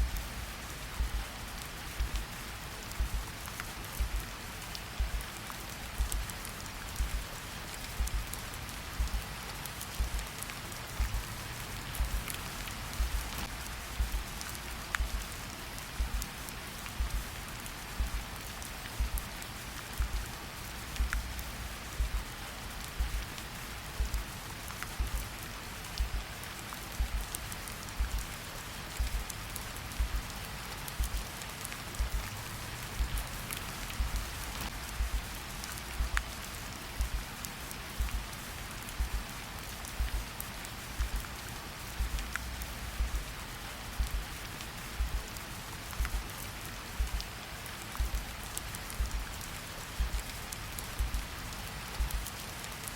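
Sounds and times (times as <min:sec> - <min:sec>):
heartbeat double thumps: 0:00.0 - 0:00.3, 0:01.0 - 0:01.3, 0:02.0 - 0:02.2, 0:03.0 - 0:03.3, 0:04.0 - 0:04.2, 0:05.0 - 0:05.2, 0:06.0 - 0:06.2, 0:07.0 - 0:07.3, 0:08.0 - 0:08.3, 0:09.0 - 0:09.2, 0:10.0 - 0:10.3, 0:11.0 - 0:11.3, 0:12.0 - 0:12.3, 0:13.0 - 0:13.3, 0:14.0 - 0:14.3, 0:15.0 - 0:15.3, 0:16.0 - 0:16.3, 0:17.0 - 0:17.3, 0:18.0 - 0:18.2, 0:19.0 - 0:19.3, 0:20.0 - 0:20.2, 0:21.0 - 0:21.4, 0:22.0 - 0:22.3, 0:23.0 - 0:23.2, 0:24.0 - 0:24.3, 0:25.0 - 0:25.3, 0:26.0 - 0:26.2, 0:27.0 - 0:27.3, 0:28.0 - 0:28.3, 0:29.0 - 0:29.3, 0:30.0 - 0:30.3, 0:31.0 - 0:31.3, 0:32.0 - 0:32.3, 0:33.0 - 0:33.4, 0:34.0 - 0:34.3, 0:35.0 - 0:35.3, 0:36.0 - 0:36.4, 0:37.0 - 0:37.3, 0:38.0 - 0:38.3, 0:39.0 - 0:39.3, 0:40.0 - 0:40.3, 0:41.0 - 0:41.3, 0:42.0 - 0:43.3, 0:44.0 - 0:44.3, 0:45.0 - 0:45.3, 0:46.0 - 0:46.2, 0:47.0 - 0:47.2, 0:48.0 - 0:48.3, 0:49.0 - 0:49.3, 0:50.0 - 0:50.3, 0:51.0 - 0:51.2, 0:52.0 - 0:52.2
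steady rain: 0:00.0 - 0:52.9.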